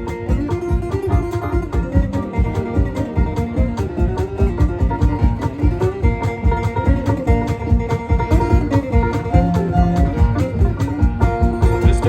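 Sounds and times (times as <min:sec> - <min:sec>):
banjo: 0:00.0 - 0:12.0
percussion beat: 0:00.0 - 0:12.0
plucked guitar: 0:00.0 - 0:12.0.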